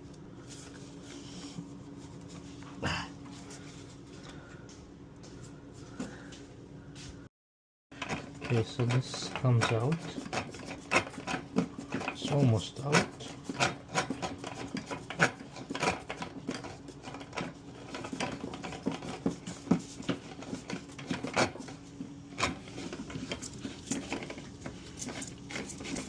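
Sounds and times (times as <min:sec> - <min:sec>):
steady low hum: 0:00.0 - 0:07.3.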